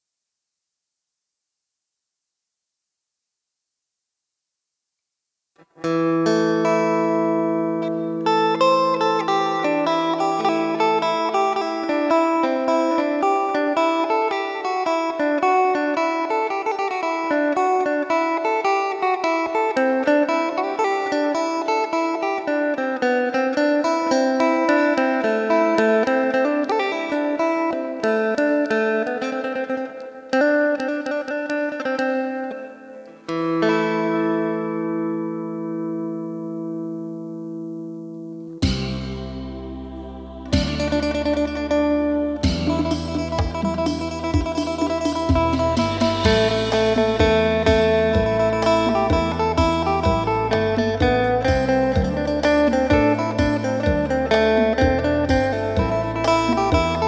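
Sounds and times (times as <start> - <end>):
plucked lute melody: 5.6 - 57.0
low drone notes: 38.6 - 52.4.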